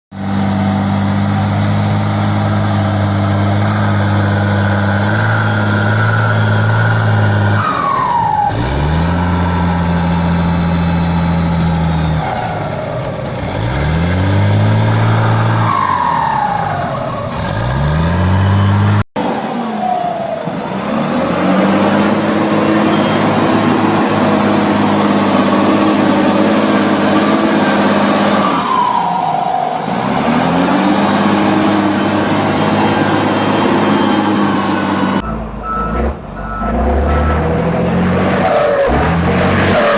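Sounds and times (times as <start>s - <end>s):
diesel engine revving: 0.1s - 39.9s
turbo whistle: 22.7s - 23.6s.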